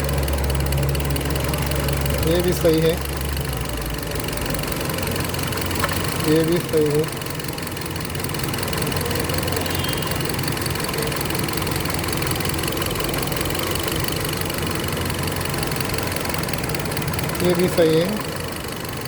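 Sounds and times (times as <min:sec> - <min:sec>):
car engine idling with misfire: 0:00.0 - 0:19.0.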